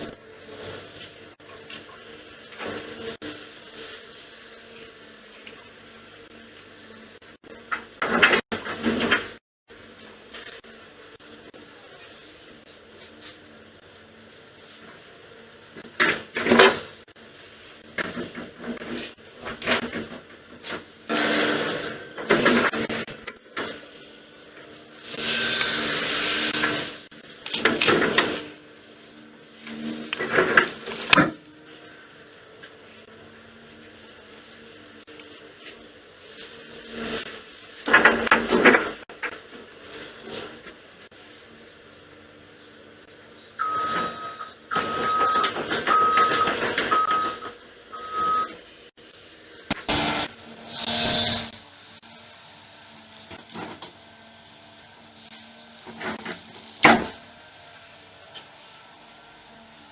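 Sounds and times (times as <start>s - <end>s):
machine engine hum and whine: 0.0s - 59.9s
reversing alarm beeping: 43.6s - 48.6s.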